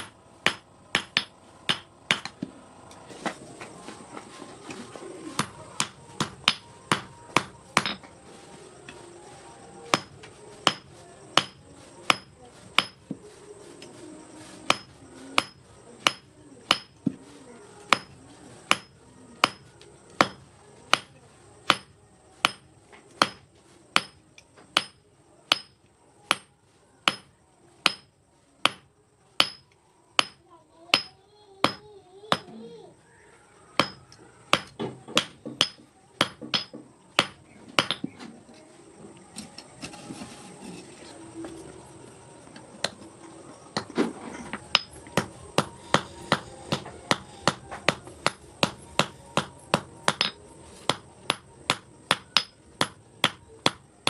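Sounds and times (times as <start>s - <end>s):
hammer striking steel on anvil: 0.0s - 2.5s, 5.4s - 8.1s, 9.9s - 13.1s, 14.6s - 17.1s, 17.9s - 23.4s, 24.0s - 24.2s, 24.8s - 28.1s, 28.7s - 32.6s, 33.8s - 38.1s, 44.7s - 53.9s.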